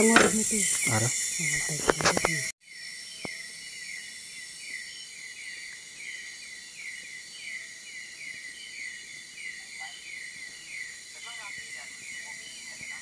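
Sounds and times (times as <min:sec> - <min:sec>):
high insect drone: 0:00.0 - 0:13.0.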